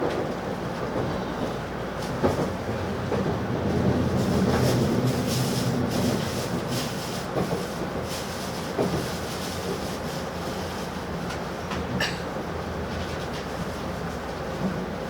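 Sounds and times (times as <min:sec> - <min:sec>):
train wheels rumbling: 0:00.0 - 0:15.0.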